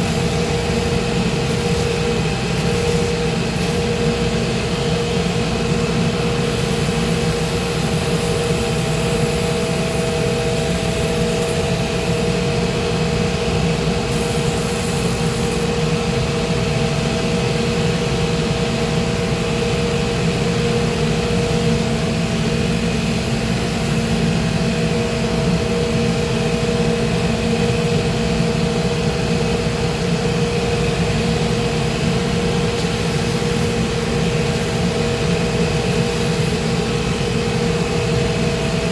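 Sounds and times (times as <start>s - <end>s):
high hiss of sanding: 0.0s - 4.0s, 6.4s - 12.4s, 14.1s - 15.7s, 32.6s - 37.0s
sanding machine hum and whine: 0.0s - 38.9s.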